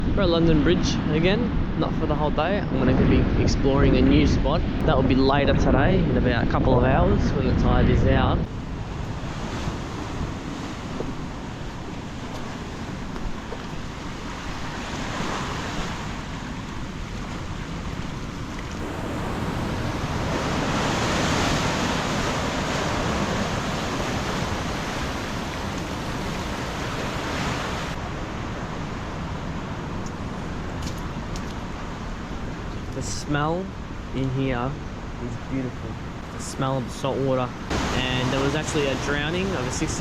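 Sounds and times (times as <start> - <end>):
ocean waves breaking: 8.5 - 32.7, 36.0 - 40.0.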